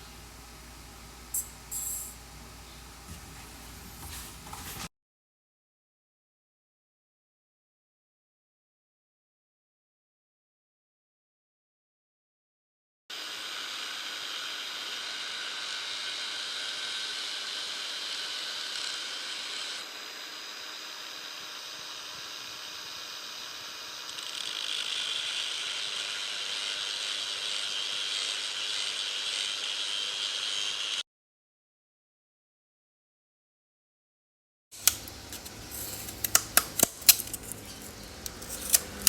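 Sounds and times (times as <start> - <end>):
small power tool rattling: 15.7 - 31.0, 34.8 - 39.0.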